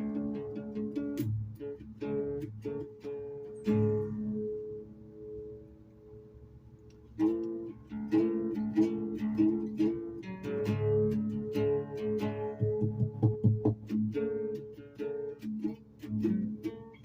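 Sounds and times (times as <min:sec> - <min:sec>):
plucked guitar: 0:00.0 - 0:06.2, 0:06.9 - 0:17.0.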